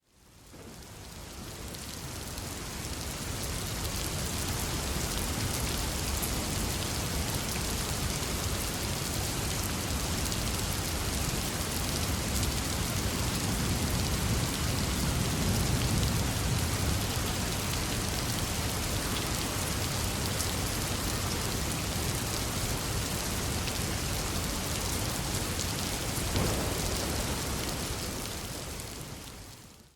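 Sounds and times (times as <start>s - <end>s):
rain on a window: 0.0s - 29.9s
distant thunder rumble: 26.3s - 28.9s.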